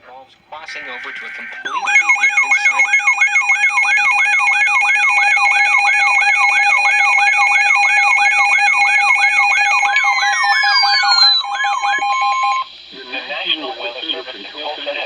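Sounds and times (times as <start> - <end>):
fast warbling alert tone: 0.7 - 12.6
steady alert tone: 0.8 - 12.6.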